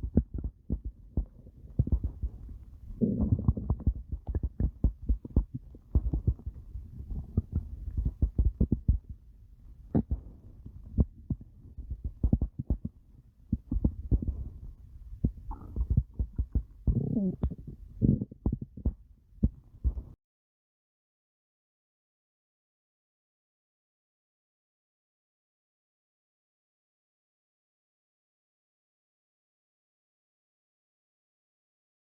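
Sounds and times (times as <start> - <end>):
stomach growling and gurgling: 0.0 - 9.2, 9.8 - 20.2.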